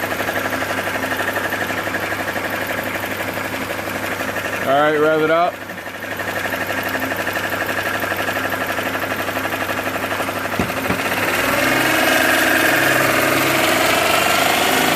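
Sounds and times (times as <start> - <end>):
car engine knocking and revving: 9.4 - 14.9.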